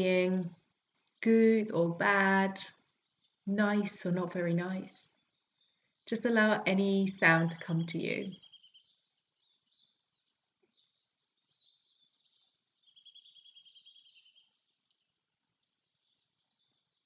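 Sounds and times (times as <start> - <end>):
faint birdsong chirps: 0.0 - 17.0
bird trill: 7.2 - 17.0.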